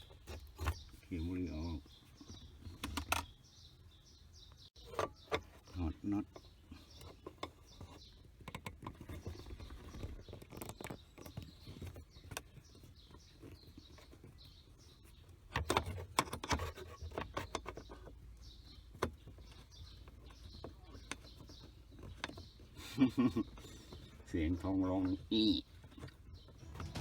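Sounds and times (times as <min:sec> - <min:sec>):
faint birds chirping: 0:00.0 - 0:27.0.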